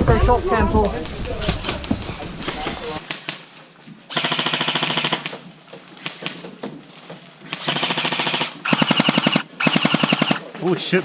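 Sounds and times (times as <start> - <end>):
airsoft gun full-auto bursts: 4.1 - 5.4, 7.5 - 10.5.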